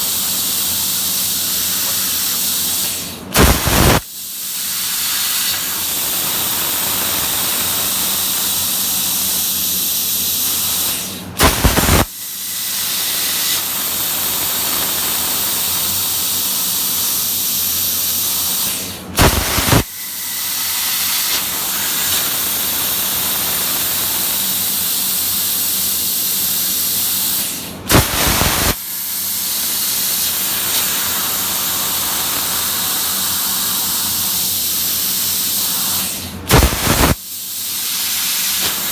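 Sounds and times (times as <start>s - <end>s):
plasma cutter torch hissing: 0.0s - 38.9s
sharp loud bursts: 3.4s - 4.0s, 11.4s - 12.1s, 36.5s - 37.2s.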